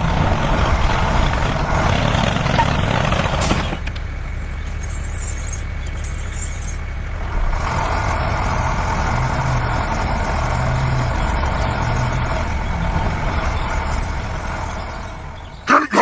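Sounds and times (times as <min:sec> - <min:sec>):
vehicle engine drone: 0:00.0 - 0:16.0.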